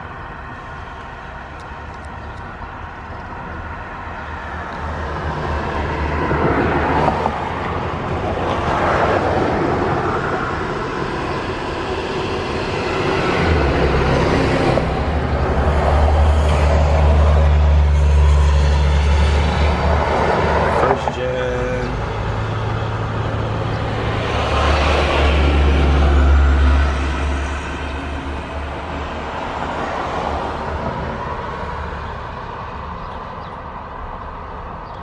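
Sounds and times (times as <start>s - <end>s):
low diesel engine drone: 0.0s - 34.8s
buses driving past: 0.0s - 35.0s.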